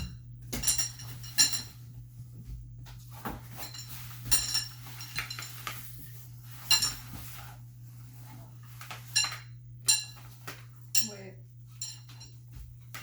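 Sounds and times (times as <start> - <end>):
metal frame parts clinking: 0.6 - 1.8, 3.6 - 5.8, 9.0 - 10.3, 10.9 - 11.2, 11.8 - 12.4.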